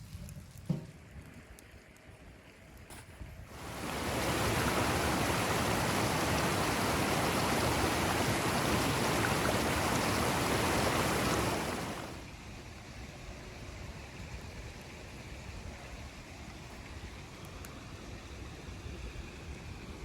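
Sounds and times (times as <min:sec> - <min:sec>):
blizzard wind rushing: 0:03.5 - 0:12.2.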